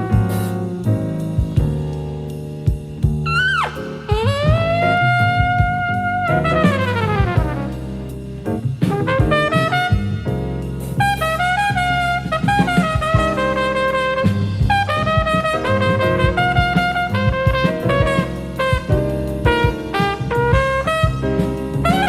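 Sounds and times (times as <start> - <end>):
trumpet playing: 0.0 - 1.3, 3.2 - 22.0
jazz rhythm section: 0.0 - 22.0.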